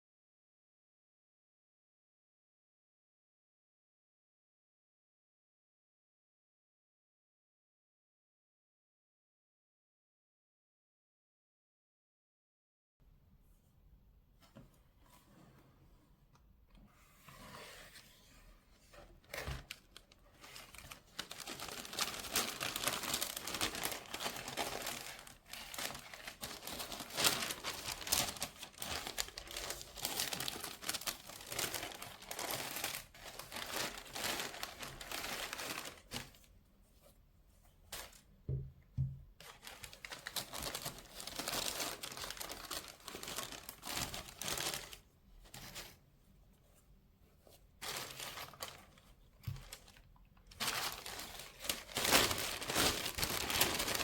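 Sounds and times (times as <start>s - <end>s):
paper crinkling and rustling: 17.0s - 38.3s, 39.0s - 46.0s, 46.6s - 54.0s
soft knocks: 38.5s - 39.3s.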